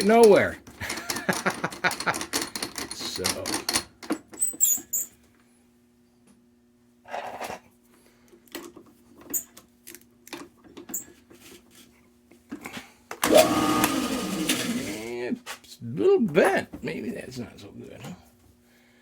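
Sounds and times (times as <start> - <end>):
clicks and knocks of handling: 8.3 - 11.7
drill motor spinning: 13.2 - 15.2
faint steady hum: 15.2 - 19.0.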